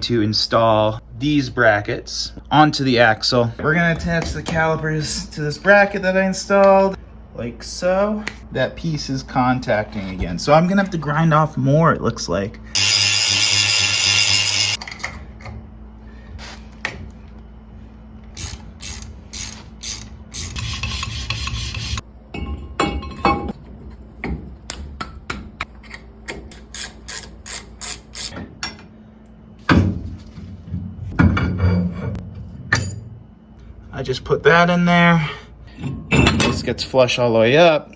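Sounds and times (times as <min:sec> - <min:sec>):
hand tools knocking on metal: 0:03.6 - 0:04.9, 0:22.3 - 0:23.6
ratchet wrench clicking: 0:18.4 - 0:21.9, 0:25.9 - 0:28.4.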